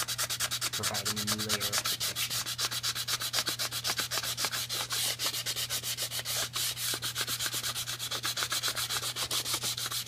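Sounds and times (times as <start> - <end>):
pad scrubbing wet wood: 0.0 - 10.0.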